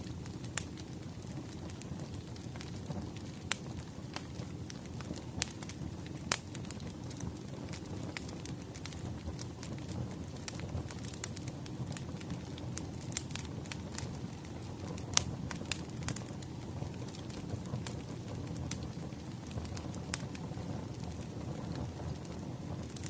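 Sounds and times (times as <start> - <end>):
wood fire crackling: 0.0 - 23.0.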